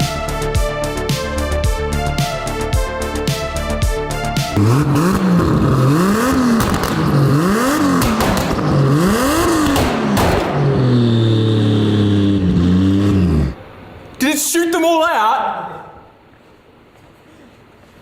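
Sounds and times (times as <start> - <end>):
car engine revving: 4.5 - 13.8.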